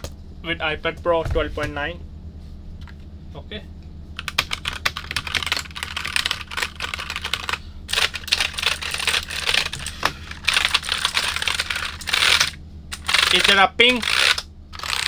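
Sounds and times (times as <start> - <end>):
rapid keyboard typing: 4.2 - 15.0.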